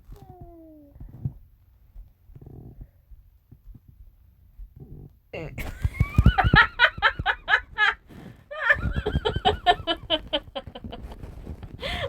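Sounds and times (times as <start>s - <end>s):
person giggling: 5.4s - 12.0s.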